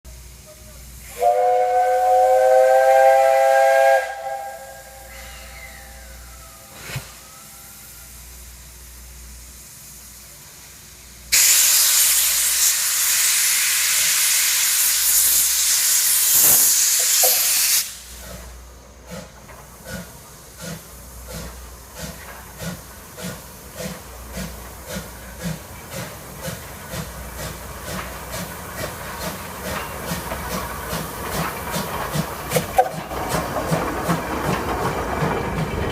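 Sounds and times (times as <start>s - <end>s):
loud hiss of steam: 0.1s - 35.8s
steam locomotive whistle: 1.0s - 8.1s, 32.8s - 33.1s.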